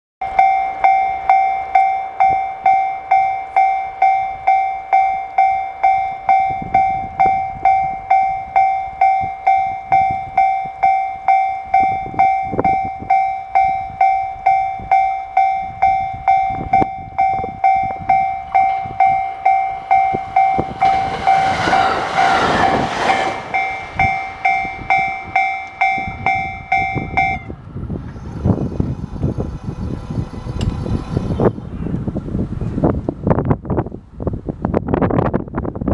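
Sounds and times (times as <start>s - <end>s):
level crossing bell ringing: 0.2s - 21.5s, 23.6s - 27.5s
electric train passing: 0.2s - 33.3s.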